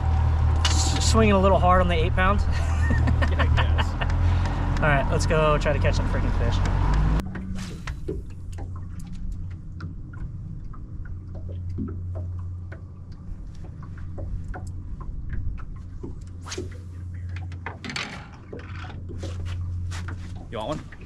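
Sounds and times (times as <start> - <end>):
boat motor humming: 0.0 - 21.0
water noise: 0.0 - 21.0
light clicks and taps: 4.0 - 4.9.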